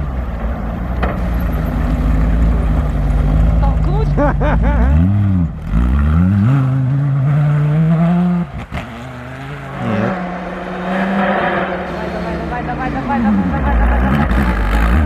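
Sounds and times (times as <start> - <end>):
vehicle engine revving hard: 4.2 - 15.0.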